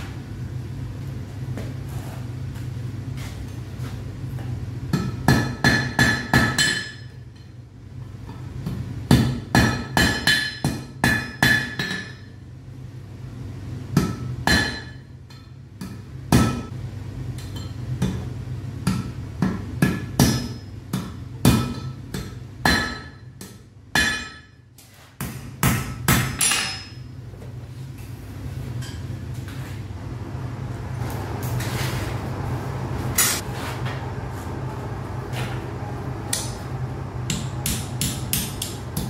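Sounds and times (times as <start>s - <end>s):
steady low hum: 0.0s - 39.0s
hammer striking iron on anvil: 4.9s - 7.2s, 8.6s - 12.4s, 14.0s - 16.7s, 18.8s - 24.6s, 25.2s - 27.0s, 36.3s - 36.6s, 37.3s - 39.0s.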